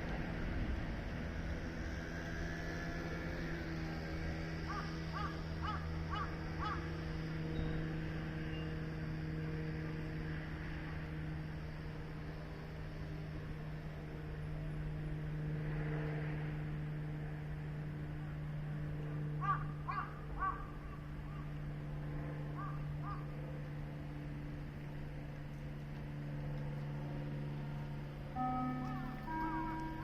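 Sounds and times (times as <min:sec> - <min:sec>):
steady low hum: 0:00.0 - 0:30.0
bird calling: 0:04.7 - 0:06.9, 0:19.4 - 0:21.6, 0:22.6 - 0:23.3.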